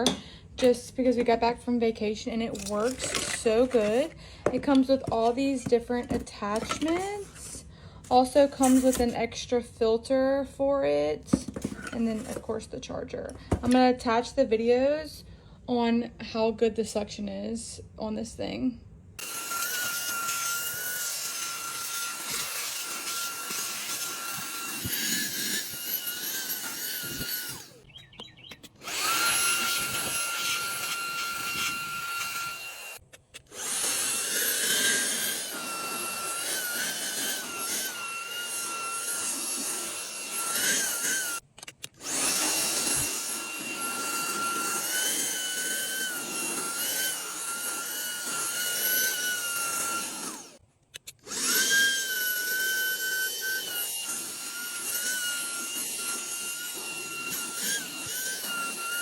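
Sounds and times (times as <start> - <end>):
handheld vacuum running: 2.5 - 9.2, 11.3 - 12.5, 13.3 - 13.9, 19.2 - 27.9, 28.8 - 41.4, 42.0 - 50.6, 51.2 - 59.0.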